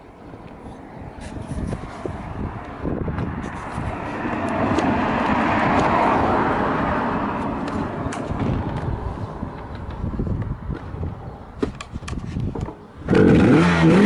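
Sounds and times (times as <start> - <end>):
vehicle passing: 0.5 - 11.5.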